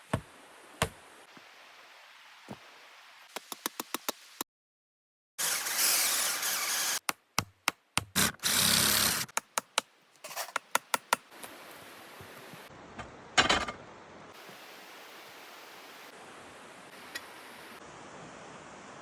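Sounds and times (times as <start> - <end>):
faint steady hiss: 9.5 - 19.0.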